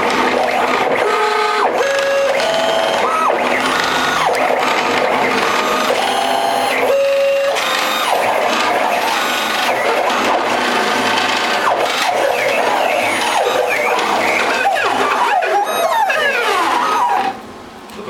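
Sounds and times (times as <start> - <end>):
stepper motors whining: 0.0 - 17.5.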